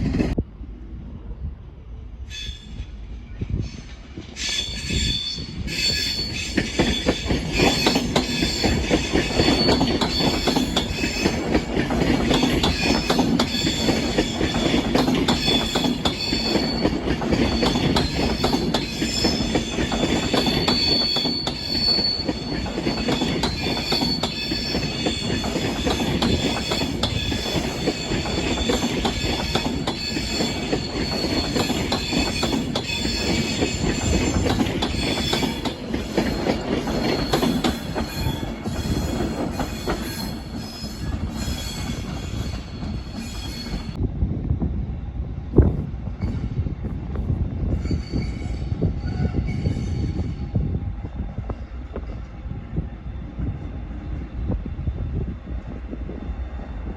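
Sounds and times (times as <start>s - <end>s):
train rumbling on rails: 0.0s - 56.9s
high-pitched wheel squeal: 4.4s - 11.4s, 15.3s - 44.0s, 47.7s - 50.4s.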